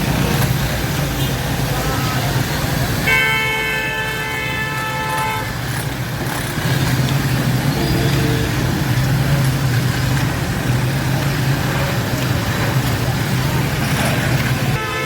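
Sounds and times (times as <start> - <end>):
vehicle horn: 3.0 - 5.6, 7.8 - 8.6, 14.8 - 15.0.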